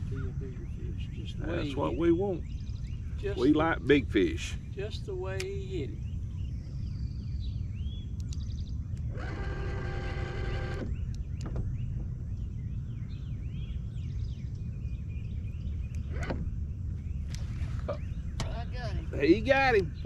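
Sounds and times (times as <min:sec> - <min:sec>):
small birds chirping: 0:00.0 - 0:20.0
steady low rumble: 0:00.0 - 0:20.0
light clicks: 0:08.2 - 0:09.1
buzzing tone: 0:09.1 - 0:11.1.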